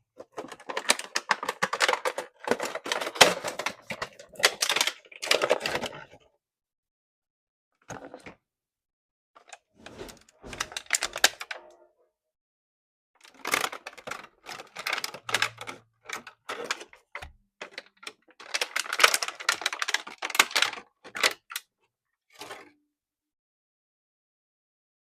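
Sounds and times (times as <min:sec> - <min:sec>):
plastic toy parts clicking: 0:00.4 - 0:03.8, 0:13.2 - 0:21.6.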